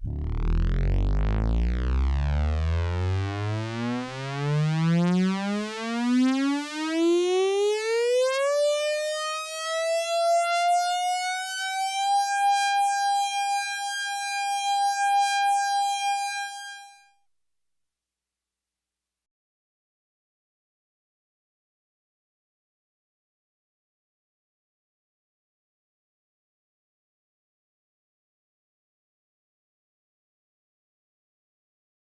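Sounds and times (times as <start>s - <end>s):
alarm siren winding up: 0.1s - 17.1s.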